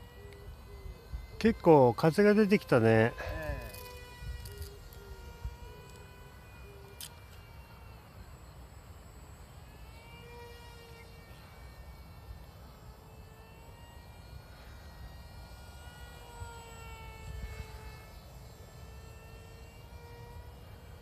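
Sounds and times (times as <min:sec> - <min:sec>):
small electric motor whining: 0:00.0 - 0:21.0.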